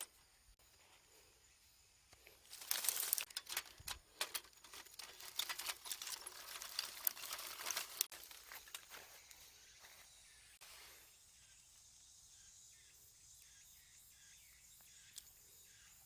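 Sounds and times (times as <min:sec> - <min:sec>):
packaging crinkling and crackling: 0:02.4 - 0:09.0.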